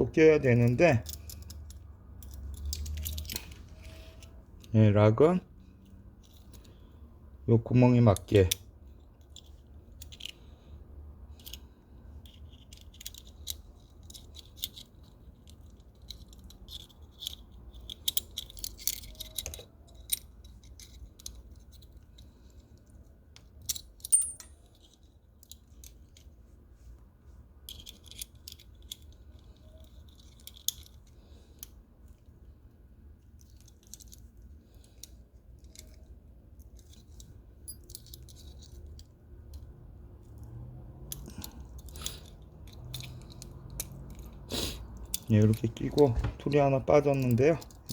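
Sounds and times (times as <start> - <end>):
metal clicks of multitool parts: 0.6 - 4.8, 11.3 - 22.2, 23.3 - 26.3, 27.6 - 31.8, 40.3 - 44.4, 45.0 - 47.9.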